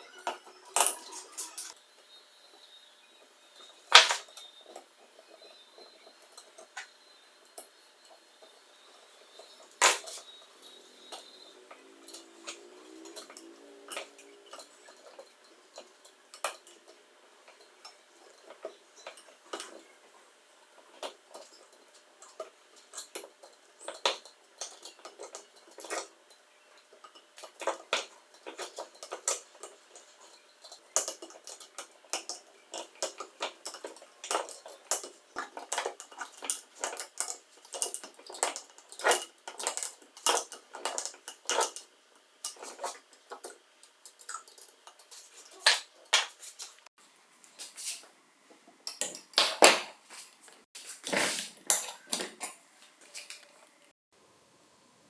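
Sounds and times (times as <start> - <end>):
small metal parts clinking: 20.9 - 46.2.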